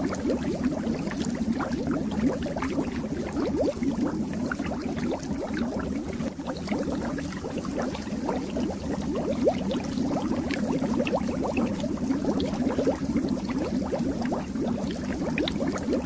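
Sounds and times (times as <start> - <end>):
aquarium water bubbling: 0.0 - 16.0.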